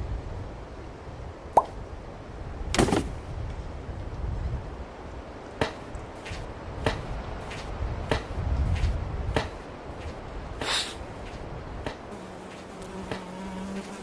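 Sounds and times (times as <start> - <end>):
sharp knock: 5.6 - 12.1.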